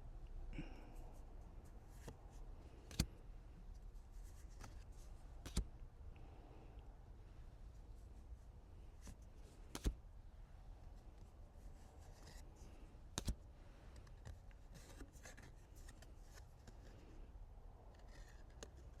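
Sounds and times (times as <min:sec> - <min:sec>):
cards rustling and sliding: 0:01.7 - 0:03.3, 0:04.0 - 0:05.9, 0:08.9 - 0:10.0, 0:11.0 - 0:17.2, 0:17.9 - 0:19.0
sharp taps of cards: 0:05.4 - 0:05.7, 0:13.1 - 0:13.4.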